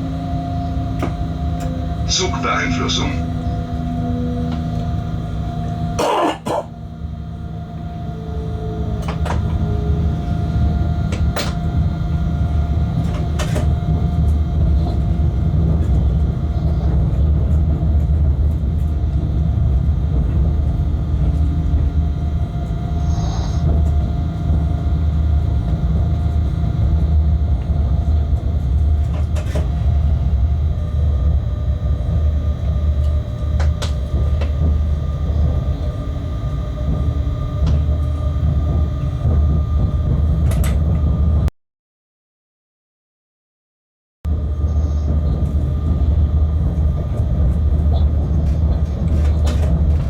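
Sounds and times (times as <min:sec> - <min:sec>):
train locomotive rumble: 0:00.0 - 0:41.5, 0:44.3 - 0:50.0.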